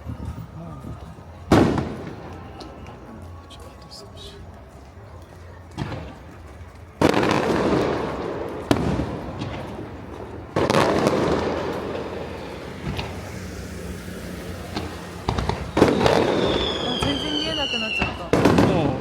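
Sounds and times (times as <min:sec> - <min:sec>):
fireworks booming with echo: 0:00.0 - 0:03.4, 0:05.6 - 0:19.0
small firework crack: 0:05.7 - 0:19.0.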